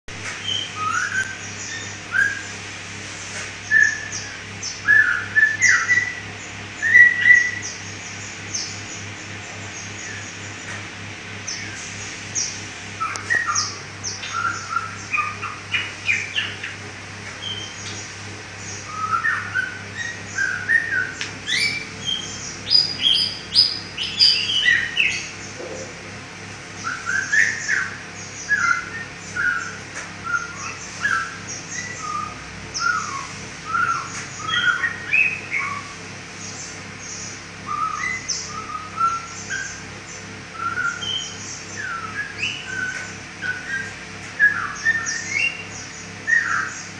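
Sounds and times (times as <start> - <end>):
songbird chirping and whistling: 0.4 - 2.5, 3.6 - 7.8, 12.4 - 16.8, 18.6 - 25.3, 26.8 - 35.9, 37.6 - 39.8, 40.5 - 46.9.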